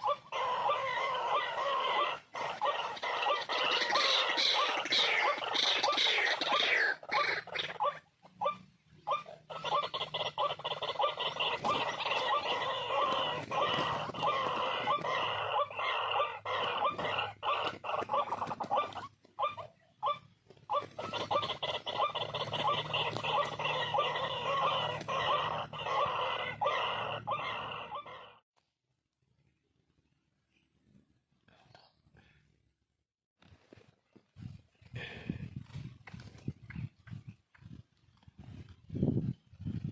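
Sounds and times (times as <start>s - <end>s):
waterhen calling harsh notes: 0.0s - 28.3s.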